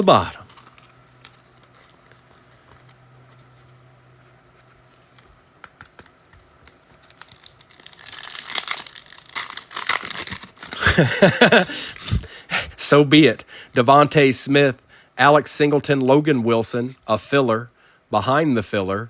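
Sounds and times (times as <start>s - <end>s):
foil wrapper tearing and crinkling: 6.6s - 12.2s.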